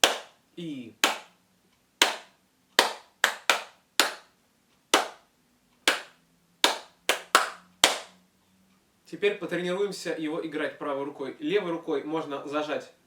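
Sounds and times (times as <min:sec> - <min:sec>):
hand claps: 0:00.0 - 0:00.4, 0:01.0 - 0:01.4, 0:02.0 - 0:04.3, 0:04.9 - 0:05.3, 0:05.9 - 0:08.2.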